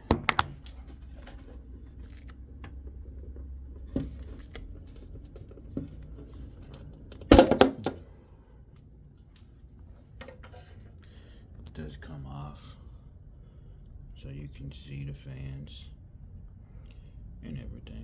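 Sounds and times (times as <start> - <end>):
plastic panel snapping: 0.0 - 0.6, 7.3 - 8.0
low steady hum: 0.0 - 18.0.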